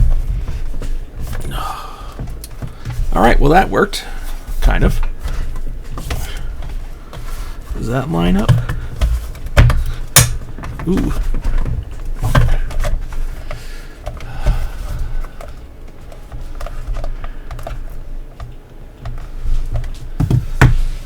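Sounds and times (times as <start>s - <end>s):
plastic pieces snapping together: 9.4s - 11.5s.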